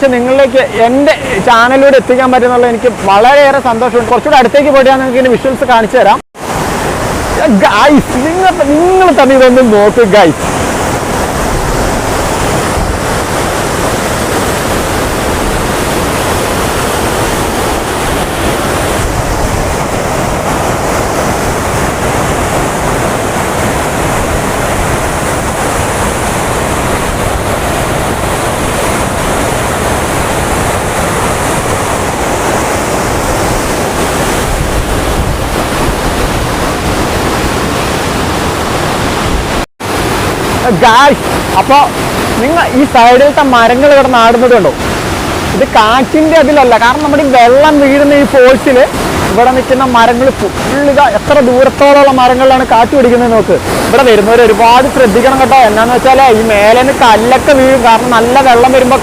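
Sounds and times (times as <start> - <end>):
waterfall rushing: 0.0 - 59.0
wind buffeting microphone: 6.4 - 42.8.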